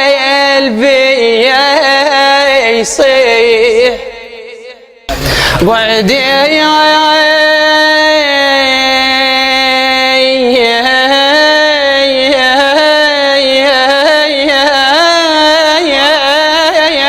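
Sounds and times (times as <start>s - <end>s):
man singing unaccompanied: 0.0s - 17.0s.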